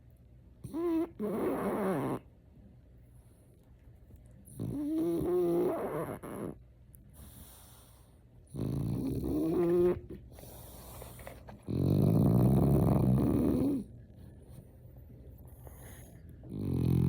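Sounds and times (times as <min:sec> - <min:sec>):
dog snoring: 0:00.6 - 0:02.3, 0:04.5 - 0:06.6, 0:07.2 - 0:13.9, 0:15.5 - 0:17.0.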